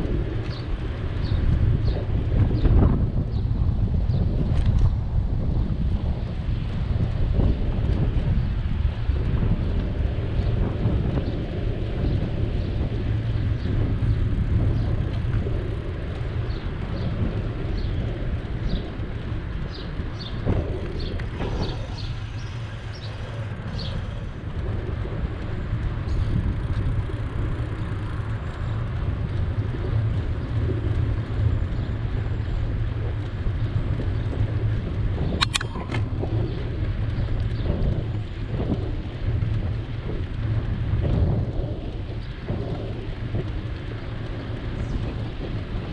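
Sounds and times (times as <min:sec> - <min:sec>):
passing city traffic: 0:00.0 - 0:45.9
wind and road noise from bicycle: 0:00.0 - 0:45.9
sharp click: 0:35.4 - 0:36.1.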